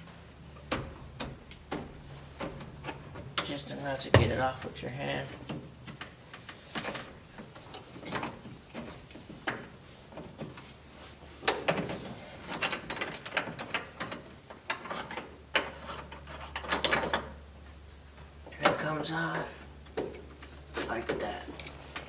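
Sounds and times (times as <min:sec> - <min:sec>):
small metal clicks and rattles: 0:11.4 - 0:17.4.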